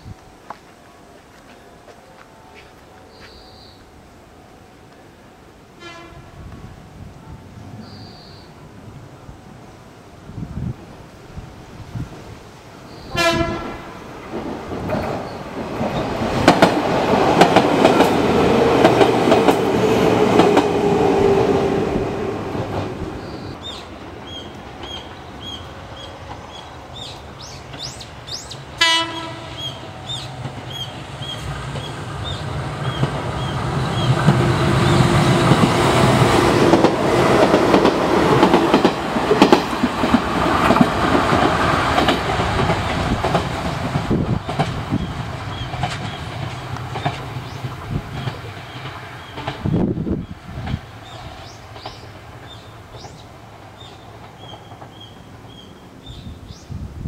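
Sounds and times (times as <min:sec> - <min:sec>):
train rumbling past: 0:00.0 - 0:57.0
train horn blast: 0:05.7 - 0:06.6, 0:13.1 - 0:14.1, 0:28.8 - 0:30.2
wheels clacking over rail joints: 0:13.3 - 0:21.8, 0:22.4 - 0:55.7.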